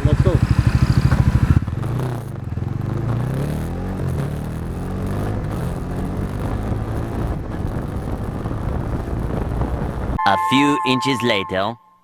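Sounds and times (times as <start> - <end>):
wind rushing over microphone: 0.0 - 3.2, 5.0 - 10.2
motorcycle engine running: 0.0 - 10.2.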